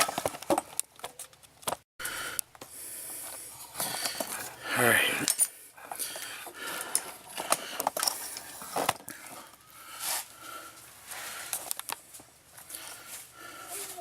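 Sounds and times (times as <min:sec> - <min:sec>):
tools and parts clicking: 0:06.8 - 0:09.1.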